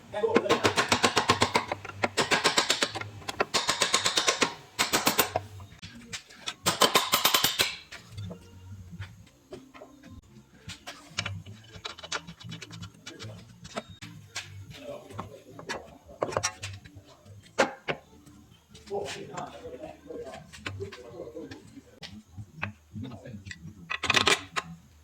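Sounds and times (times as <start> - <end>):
ratchet wrench clicking: 0.6 - 5.4, 6.7 - 7.9.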